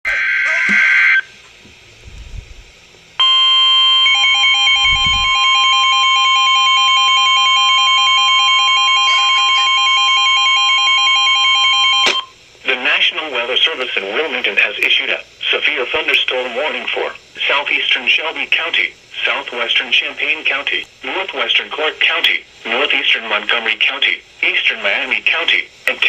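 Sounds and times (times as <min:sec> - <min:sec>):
steady alert tone: 0:03.2 - 0:05.8.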